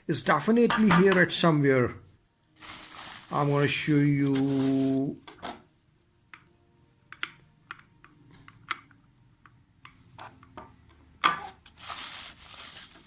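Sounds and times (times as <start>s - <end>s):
plastic parts clicking and knocking: 7.1s - 11.5s.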